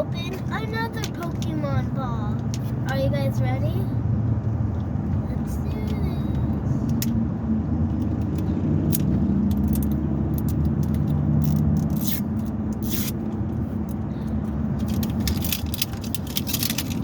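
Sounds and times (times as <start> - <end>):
paper wrapper crinkling and tearing: 14.9 - 17.0.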